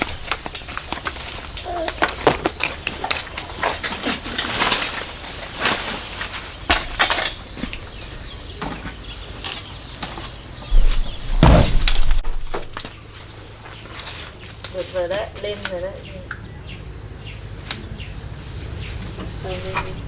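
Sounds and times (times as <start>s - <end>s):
low rumbling burst: 10.7s - 12.8s
sharp knocks and clatters: 10.7s - 13.0s.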